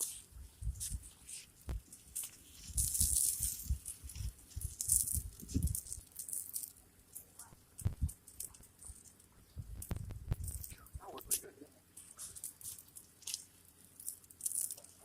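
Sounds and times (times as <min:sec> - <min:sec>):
burning matches crackling: 0:00.0 - 0:15.0
low thumps: 0:09.6 - 0:11.0.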